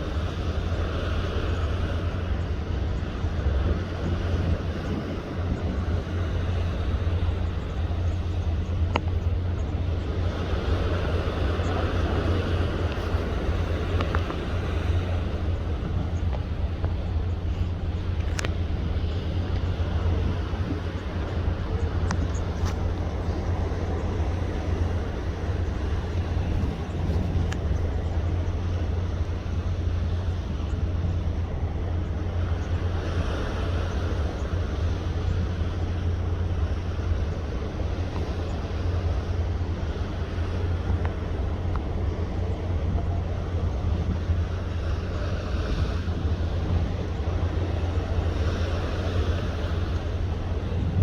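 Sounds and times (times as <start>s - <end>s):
strong wind on microphone: 0.0s - 51.0s.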